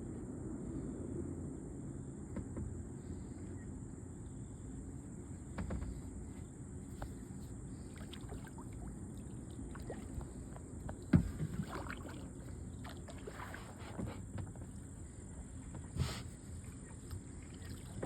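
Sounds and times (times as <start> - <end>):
light knocks on boat: 5.5 - 6.0, 10.8 - 11.8
paddle dipping in water: 7.0 - 18.0
water splashing and dripping: 8.0 - 13.8, 16.6 - 18.0.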